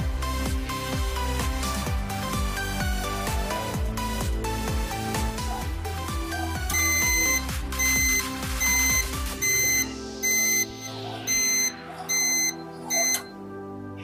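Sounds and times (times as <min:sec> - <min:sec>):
background music: 0:00.0 - 0:14.0
washing machine timer beeping: 0:06.6 - 0:13.4.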